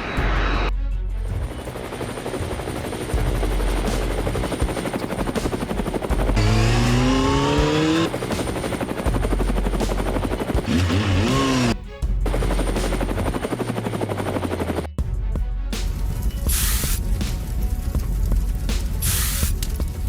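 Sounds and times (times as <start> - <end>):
helicopter rotor chop: 1.4 - 14.9
rising engine whine: 6.2 - 8.2, 10.6 - 11.8.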